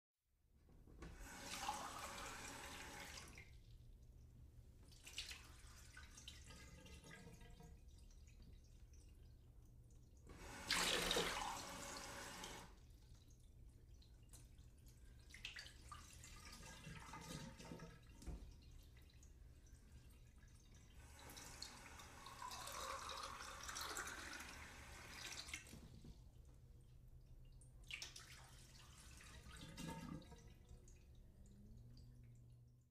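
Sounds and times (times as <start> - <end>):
tap water pouring into a glass: 1.1 - 3.6, 15.4 - 19.3, 20.1 - 26.2, 28.0 - 32.3.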